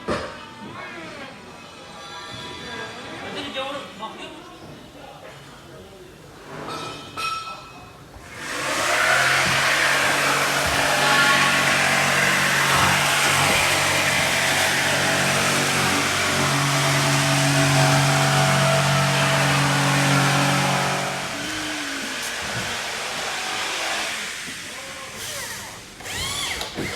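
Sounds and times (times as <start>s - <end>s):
machine motor humming and hissing: 8.2s - 26.9s.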